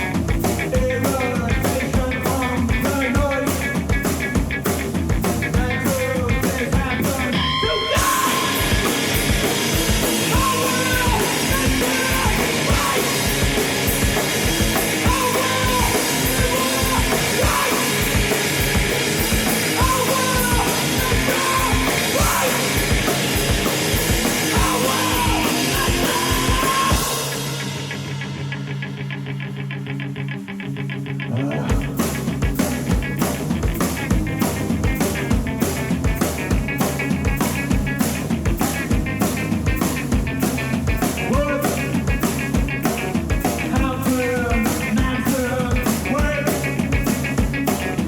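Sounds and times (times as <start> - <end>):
pounding drums and cymbals: 0.0 - 29.4, 31.7 - 48.0
distorted electric guitar: 0.0 - 48.0
voice-like wails: 7.3 - 8.8, 10.3 - 13.3, 19.8 - 23.0.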